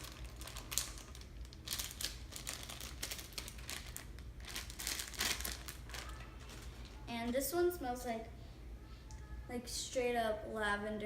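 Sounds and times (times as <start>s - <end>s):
plastic packaging crinkling: 0.0s - 7.3s.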